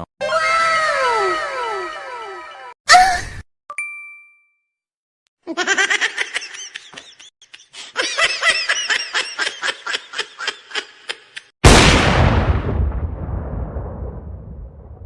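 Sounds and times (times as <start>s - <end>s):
high-pitched laughing voice: 5.4s - 11.5s.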